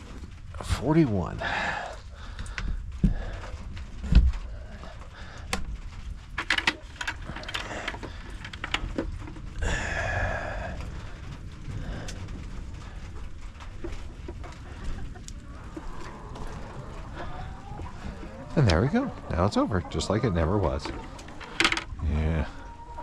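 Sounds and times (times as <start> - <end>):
hens clucking: 12.1 - 23.0
drawn-out hen call: 14.9 - 23.0.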